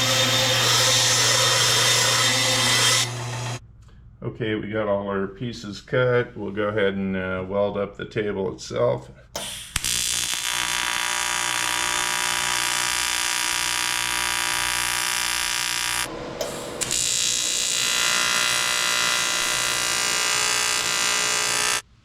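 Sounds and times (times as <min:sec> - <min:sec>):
welding arc buzzing: 0:00.0 - 0:03.6, 0:09.4 - 0:21.9.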